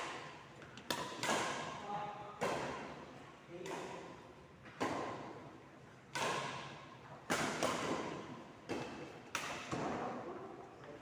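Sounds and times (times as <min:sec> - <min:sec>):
ball hits and bounces echoing: 0:00.0 - 0:11.0.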